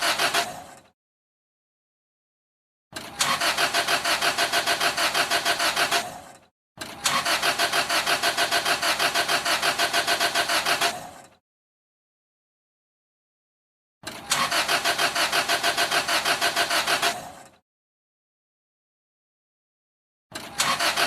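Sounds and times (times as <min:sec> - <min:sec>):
car engine cranking on starter: 0:00.0 - 0:00.9, 0:03.0 - 0:11.4, 0:14.0 - 0:17.6, 0:20.3 - 0:21.0.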